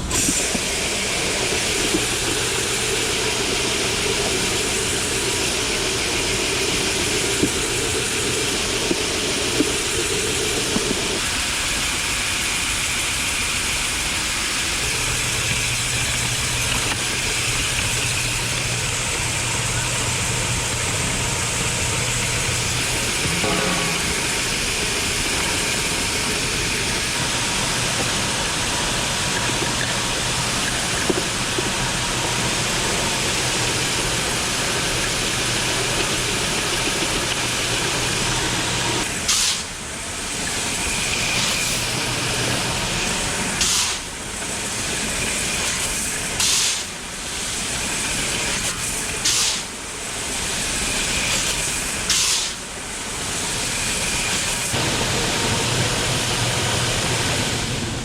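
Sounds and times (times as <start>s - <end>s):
machinery hissing rush: 0.0s - 58.0s
sharp hissing bursts: 43.2s - 54.8s.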